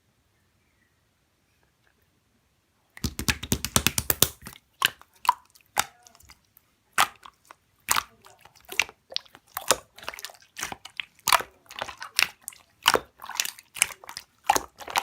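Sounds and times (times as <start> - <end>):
slime squished by hand: 3.0 - 6.4, 7.0 - 15.0.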